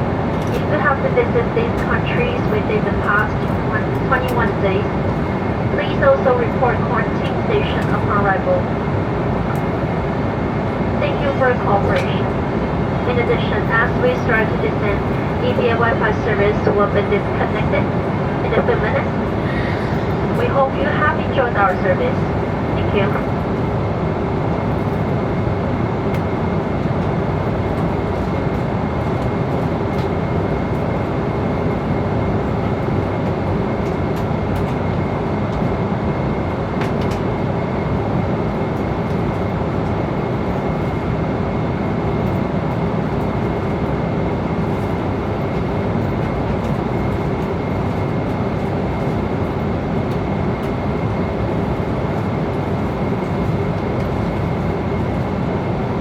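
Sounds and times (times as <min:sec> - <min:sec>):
airliner cabin engine rush: 0:00.0 - 0:56.0.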